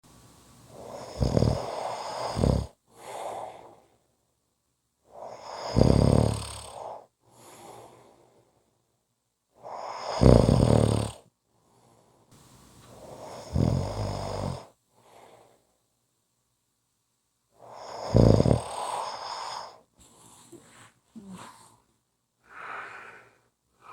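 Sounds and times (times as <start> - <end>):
person snoring: 0.7 - 3.6, 5.3 - 7.0, 9.7 - 11.2, 13.1 - 14.7, 17.7 - 19.8
soft breath: 1.6 - 4.1, 6.8 - 8.7, 11.5 - 13.5, 14.9 - 15.8, 17.6 - 23.9.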